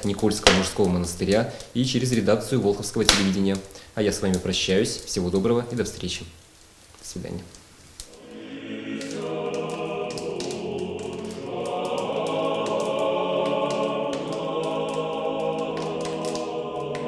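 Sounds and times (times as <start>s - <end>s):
choir singing sustained chords: 8.2s - 17.0s.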